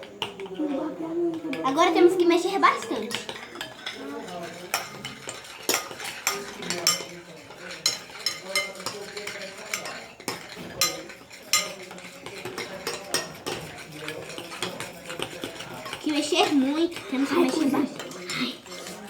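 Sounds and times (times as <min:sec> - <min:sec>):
spoon stirring thick mix: 0:00.0 - 0:19.0
spoon scraping container: 0:00.2 - 0:19.0.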